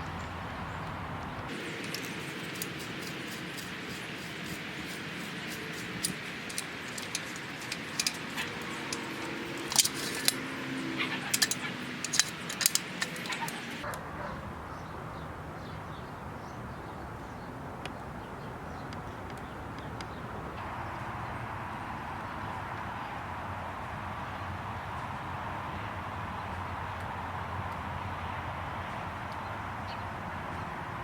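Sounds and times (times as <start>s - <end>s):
metal parts clinking: 1.5s - 13.8s.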